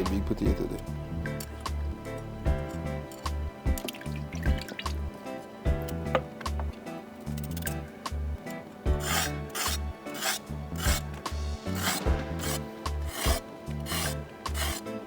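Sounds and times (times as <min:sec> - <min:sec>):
background music: 0:00.0 - 0:15.0
knife scraping potato skin: 0:08.5 - 0:15.0.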